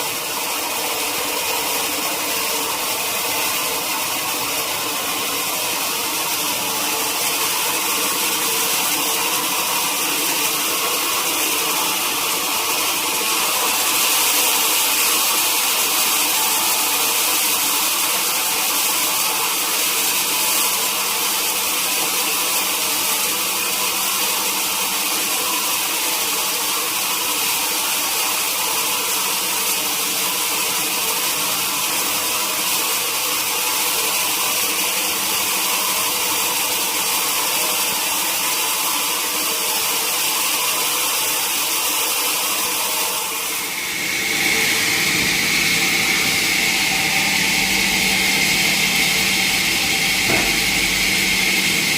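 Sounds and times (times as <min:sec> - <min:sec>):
sawmill machinery running: 0:00.0 - 0:51.9
high whine: 0:43.7 - 0:51.9.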